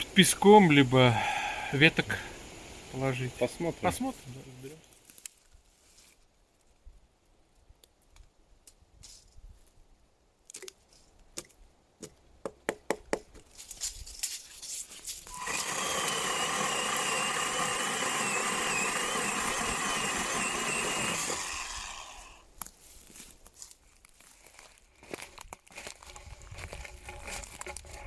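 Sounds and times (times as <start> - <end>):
small power tool motor: 15.3 - 22.4.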